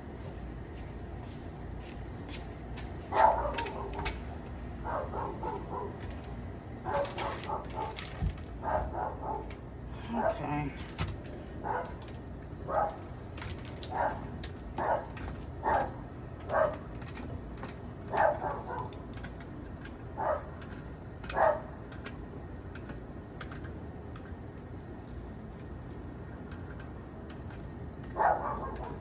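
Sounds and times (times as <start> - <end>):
distant dogs barking: 3.1 - 10.6, 11.5 - 13.2, 13.8 - 16.9, 18.0 - 19.0, 20.1 - 20.6, 21.3 - 21.8, 28.1 - 29.0.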